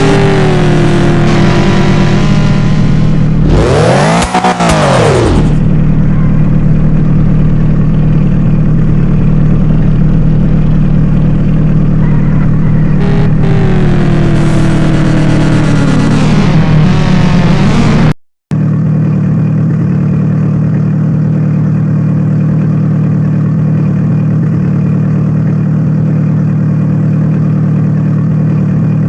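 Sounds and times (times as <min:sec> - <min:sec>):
car engine revving: 0:00.0 - 0:21.6.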